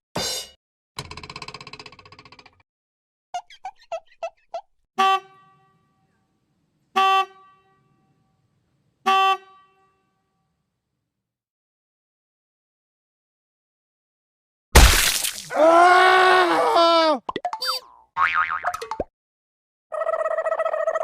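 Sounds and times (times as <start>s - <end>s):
horn honking: 5.0s - 6.3s, 6.9s - 10.4s
short squeaky chirps: 17.6s - 18.0s.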